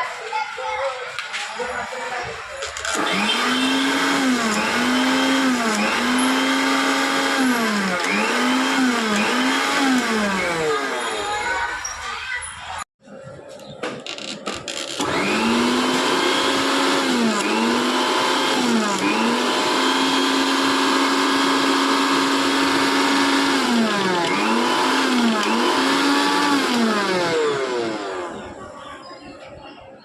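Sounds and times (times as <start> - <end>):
mixer grinder motor running: 2.7 - 11.0, 14.7 - 28.6.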